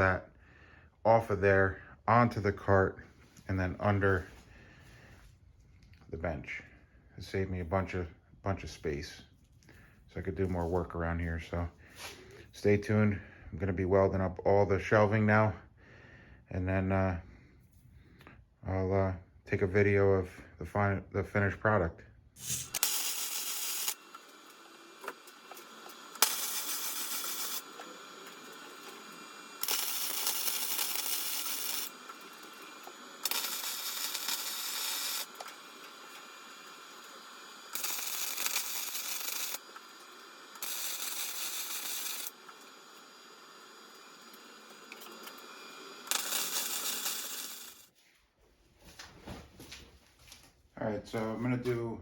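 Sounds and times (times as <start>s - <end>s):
welding arc crackling: 22.4s - 47.9s.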